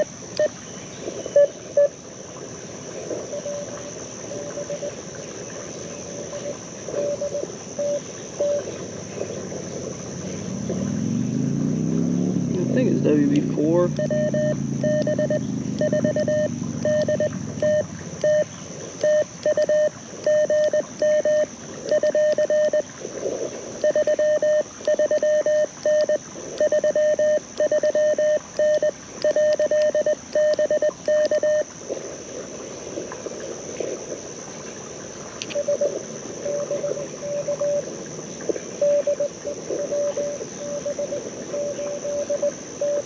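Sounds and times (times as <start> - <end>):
receiver hiss: 0.0 - 10.3, 12.6 - 43.0
morse code tone: 7.0 - 8.7, 13.8 - 22.8, 23.8 - 31.7, 35.5 - 37.8, 38.8 - 43.0.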